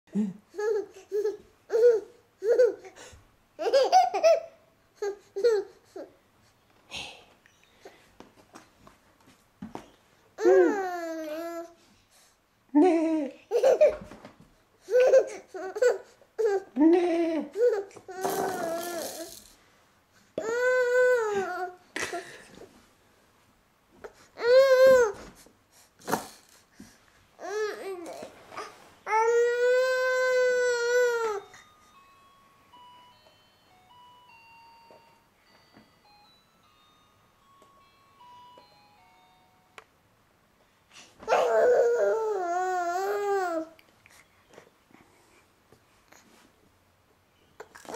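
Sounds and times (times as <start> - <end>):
baby babbling and laughing: 0.5 - 2.9, 10.4 - 11.7, 14.9 - 19.4, 41.3 - 43.7.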